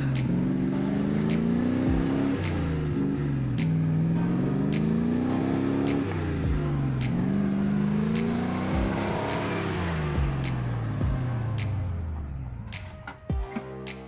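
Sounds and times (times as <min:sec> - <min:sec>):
truck engine revving: 0:00.0 - 0:13.3
sharp tick: 0:03.6 - 0:03.9, 0:04.7 - 0:05.0, 0:07.0 - 0:07.4.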